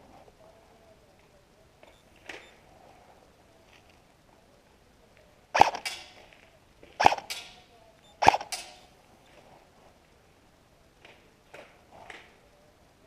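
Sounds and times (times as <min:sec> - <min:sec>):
airsoft gun shots: 0:05.6 - 0:06.2, 0:07.0 - 0:07.6, 0:08.2 - 0:08.9.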